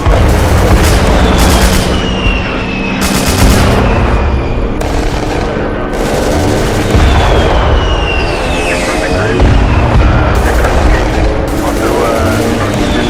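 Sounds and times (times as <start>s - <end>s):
explosion booms: 0.0s - 2.7s, 6.7s - 8.7s
dense gunfire: 0.0s - 8.8s, 9.4s - 13.0s
constant low rumble: 0.0s - 13.0s.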